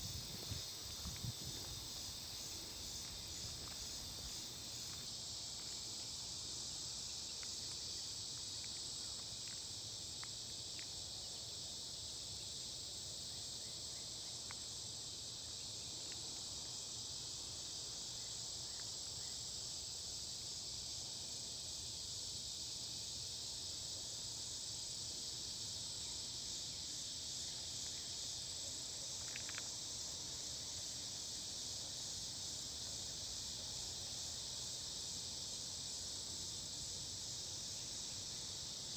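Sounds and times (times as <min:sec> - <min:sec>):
insects chorus: 0:00.0 - 0:38.9
faint ticks: 0:07.3 - 0:11.0, 0:14.4 - 0:14.7, 0:16.0 - 0:16.5, 0:29.1 - 0:29.8.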